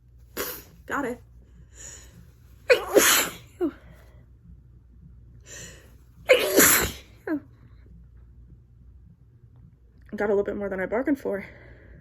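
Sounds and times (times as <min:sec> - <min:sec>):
person sneezing: 0:00.4 - 0:00.8, 0:02.7 - 0:03.7, 0:06.3 - 0:07.2.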